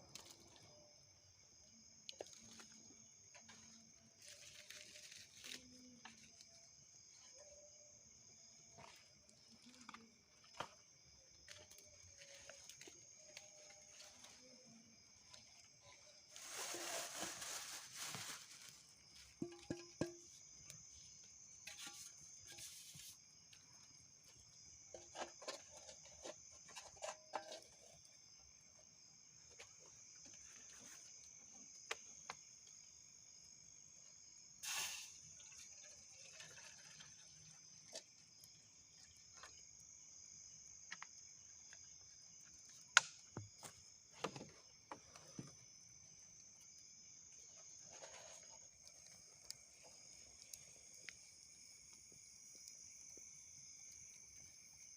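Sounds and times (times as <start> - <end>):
crickets and insects chirring: 0.0 - 54.9
rustle: 4.2 - 6.5, 12.1 - 28.0, 34.6 - 38.6.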